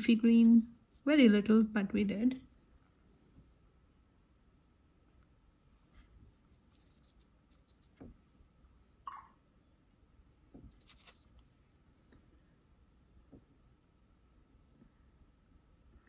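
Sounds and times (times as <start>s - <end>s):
light scratchy sounds: 0.0s - 2.0s, 5.6s - 8.4s, 10.6s - 11.6s.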